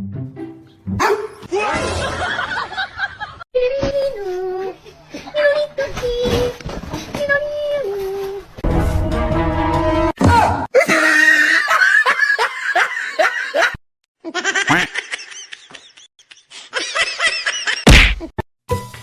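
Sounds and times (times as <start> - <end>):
people laughing: 1.8 - 3.4, 10.8 - 17.8.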